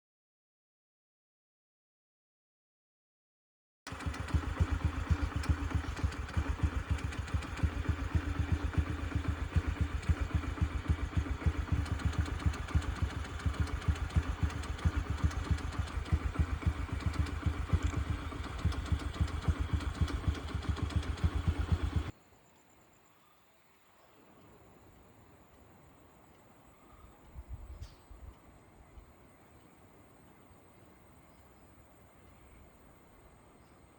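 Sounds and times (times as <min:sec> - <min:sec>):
engine idling: 0:03.9 - 0:22.2.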